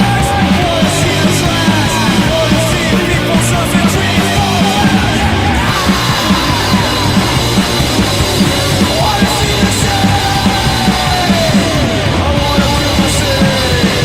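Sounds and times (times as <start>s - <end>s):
fast steady drum beat: 0.0s - 14.0s
rock band playing: 0.0s - 14.0s.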